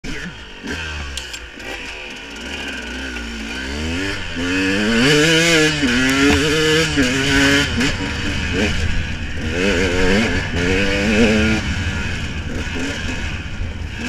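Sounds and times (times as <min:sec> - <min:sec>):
engine revving: 0:00.0 - 0:14.0.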